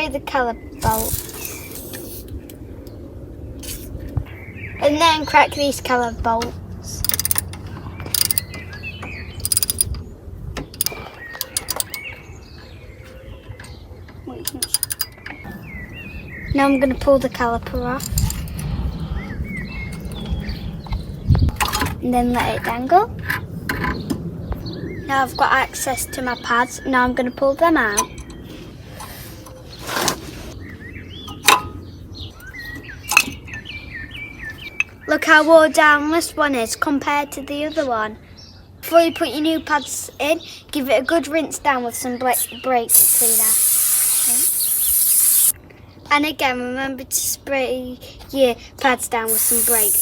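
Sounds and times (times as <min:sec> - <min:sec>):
birds chirping: 0:04.3 - 0:35.5, 0:36.6 - 0:46.4, 0:49.1 - 0:50.0
socket ratchet clicking: 0:07.0 - 0:07.5, 0:08.1 - 0:08.5, 0:09.4 - 0:09.9, 0:10.8 - 0:12.0, 0:14.5 - 0:15.2, 0:42.9 - 0:45.5, 0:49.3 - 0:50.0
brake pad scraping metal: 0:28.2 - 0:30.6.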